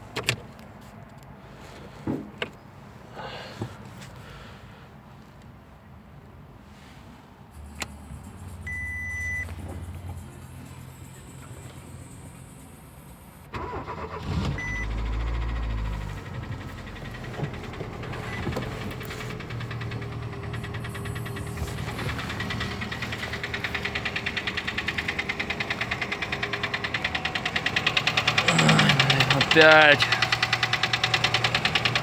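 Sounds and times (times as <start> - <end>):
car engine starting and idling: 6.8 - 32.0
fast ticking of engine lifters: 7.6 - 32.0
short beep: 8.7 - 9.5, 14.6 - 14.9.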